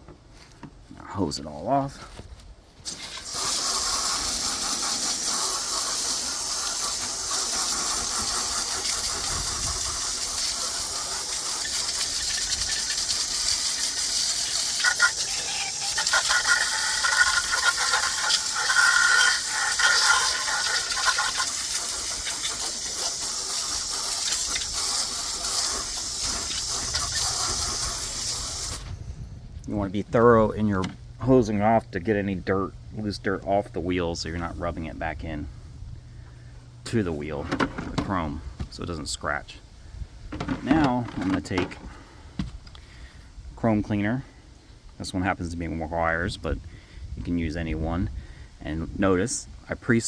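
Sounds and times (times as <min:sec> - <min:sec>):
garden hose spraying water: 0:02.8 - 0:29.1.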